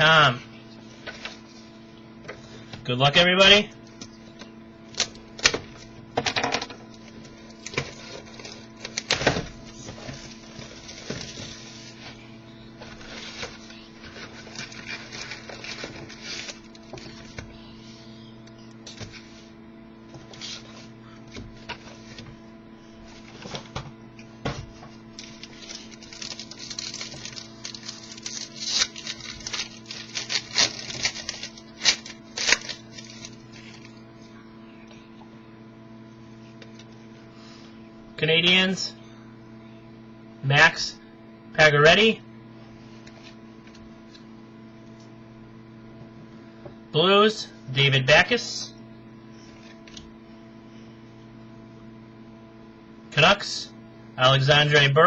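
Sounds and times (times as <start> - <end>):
electrical hum: 0.0 - 55.0
packaging crinkling and rustling: 6.8 - 12.0, 12.8 - 17.4, 24.6 - 34.0.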